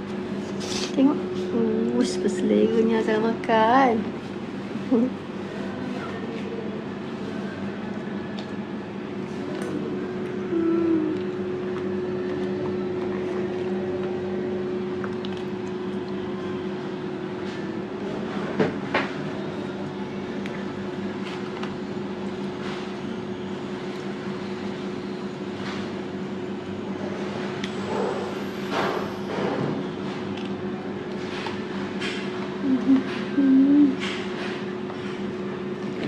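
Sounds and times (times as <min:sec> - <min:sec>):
low mechanical hum: 0:00.0 - 0:36.0.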